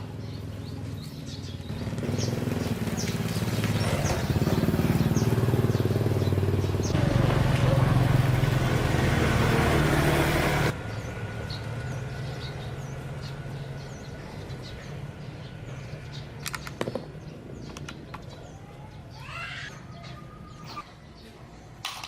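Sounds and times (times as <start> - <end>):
birds chirping: 0.0 - 22.0
small engine running: 1.6 - 14.9.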